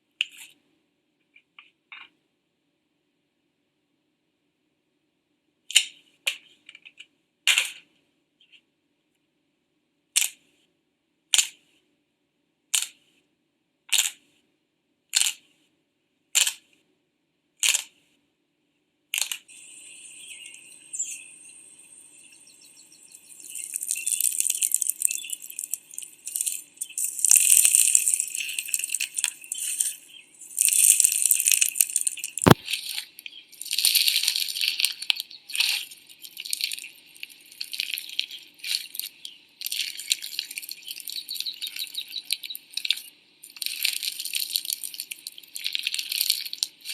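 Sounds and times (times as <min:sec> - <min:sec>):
slime crackling when squished: 0:23.6 - 0:46.9
slime popping: 0:23.7 - 0:46.9.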